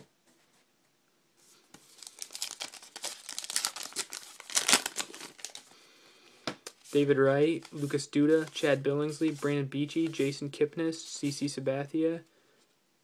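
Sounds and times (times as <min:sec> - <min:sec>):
foil wrapper tearing and crinkling: 0:01.9 - 0:05.7.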